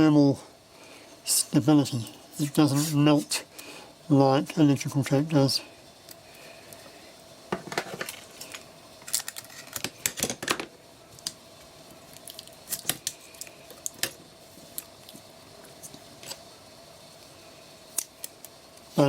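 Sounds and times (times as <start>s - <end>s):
tape crinkling and crackling: 8.0s - 10.4s, 12.1s - 16.4s.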